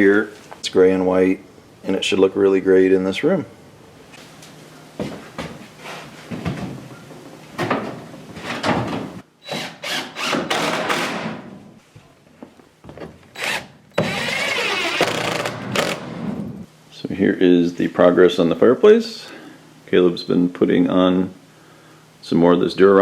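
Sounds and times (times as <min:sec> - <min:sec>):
impact driver driving screws: 0:09.5 - 0:11.3, 0:13.4 - 0:16.2.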